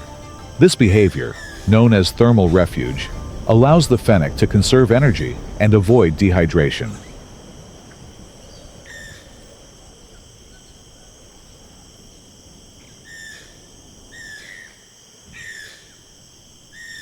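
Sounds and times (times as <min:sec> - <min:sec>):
short falling call: 0:00.0 - 0:07.4
insects trilling: 0:00.0 - 0:17.0.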